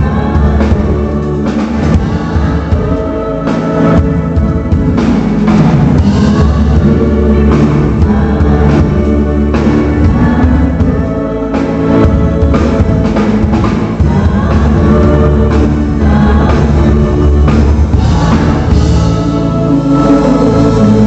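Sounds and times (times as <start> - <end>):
band playing instrumental: 0.0 - 21.0
drum kit: 0.0 - 21.0.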